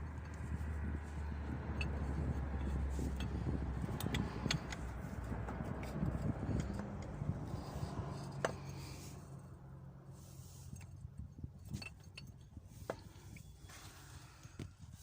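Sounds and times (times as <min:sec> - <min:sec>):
metal tools clinking: 0:11.6 - 0:13.7.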